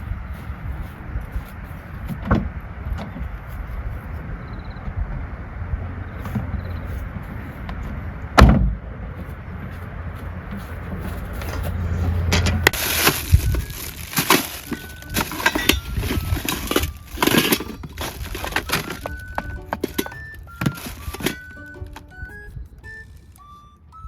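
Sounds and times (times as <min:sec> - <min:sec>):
hard objects clattering: 0:12.3 - 0:23.0
short high tones: 0:13.1 - 0:24.0.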